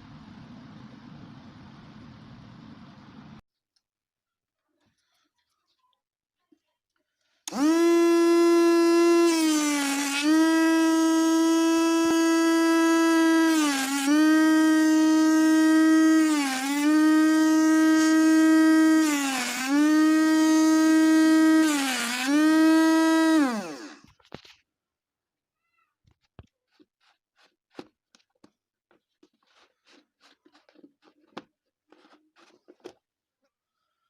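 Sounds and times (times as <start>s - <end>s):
small motor whining: 7.5s - 24.1s.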